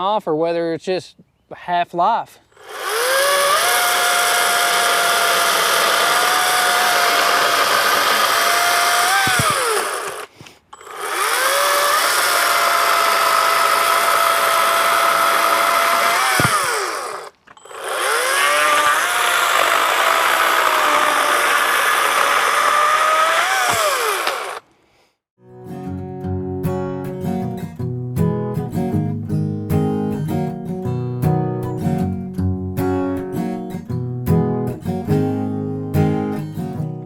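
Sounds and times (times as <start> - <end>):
electric chainsaw whine: 2.6 - 24.7.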